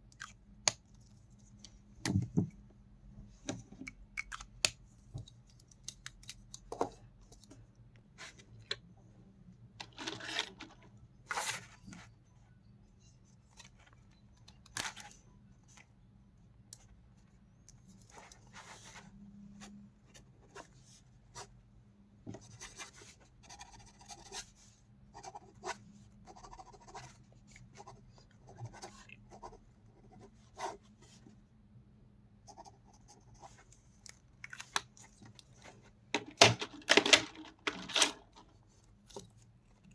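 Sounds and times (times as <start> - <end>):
pens and packaging clicking: 3.8 - 6.7.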